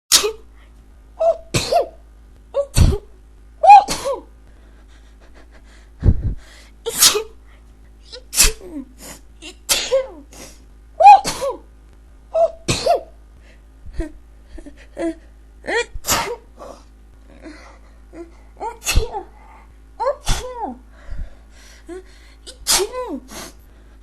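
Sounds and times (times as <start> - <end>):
woman sneezing: 3.6 - 4.2, 6.9 - 7.3, 8.1 - 8.8, 11.0 - 11.6, 15.9 - 16.4, 20.0 - 20.8, 22.5 - 23.4.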